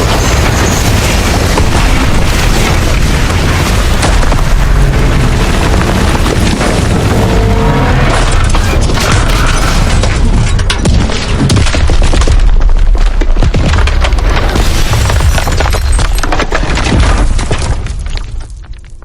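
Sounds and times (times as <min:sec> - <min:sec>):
train crash: 0:00.0 - 0:12.2.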